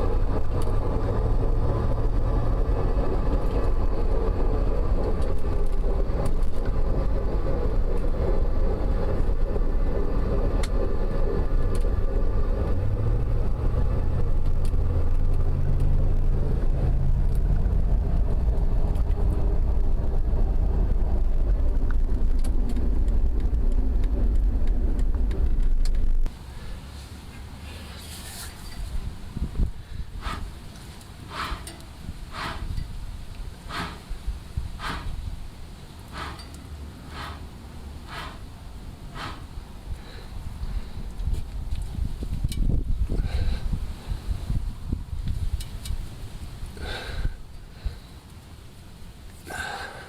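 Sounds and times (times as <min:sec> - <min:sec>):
differential whine: 0:00.0 - 0:26.4
road and drivetrain drone: 0:00.0 - 0:50.0.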